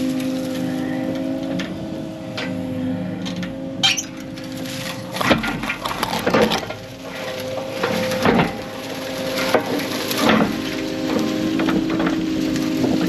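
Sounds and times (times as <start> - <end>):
diesel engine running: 0.0 - 13.0
wood snapping and crushing: 3.4 - 13.0.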